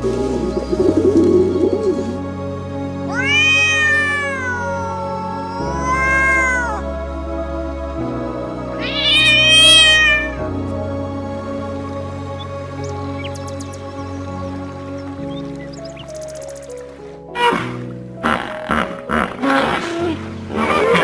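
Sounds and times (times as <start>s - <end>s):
soft background music: 0.0s - 21.0s
cat meowing: 3.1s - 6.8s, 8.8s - 10.4s.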